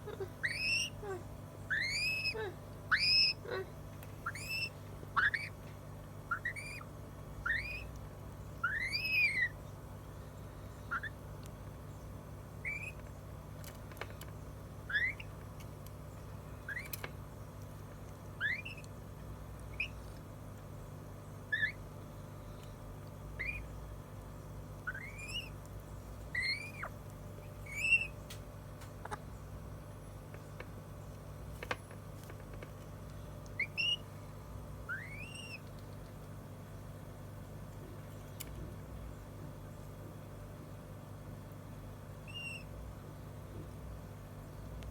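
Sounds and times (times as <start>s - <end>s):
steady low hum: 0.0s - 44.9s
parrot whistling: 0.4s - 1.0s, 1.7s - 3.6s, 4.2s - 5.5s, 6.3s - 6.8s, 7.4s - 7.9s, 8.6s - 9.5s, 18.4s - 18.8s, 21.5s - 21.8s, 26.4s - 26.9s, 27.7s - 28.1s, 33.6s - 34.0s, 34.9s - 35.6s, 42.3s - 42.6s.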